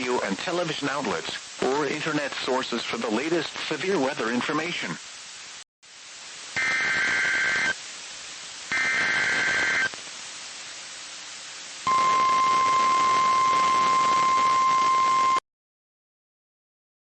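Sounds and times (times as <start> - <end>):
faint radio hiss: 0.0 - 15.4
screeching digital data bursts: 6.6 - 7.8, 8.7 - 9.9, 11.9 - 15.4
steady alarm tone: 6.6 - 7.8, 8.7 - 9.9, 11.9 - 15.4.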